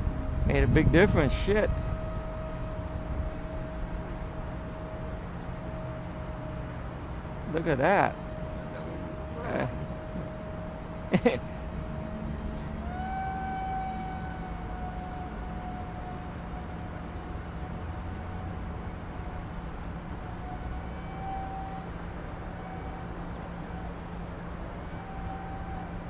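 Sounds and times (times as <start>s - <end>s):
wind rumble on microphone: 0.0s - 6.6s
model airplane motor whining: 0.0s - 26.0s.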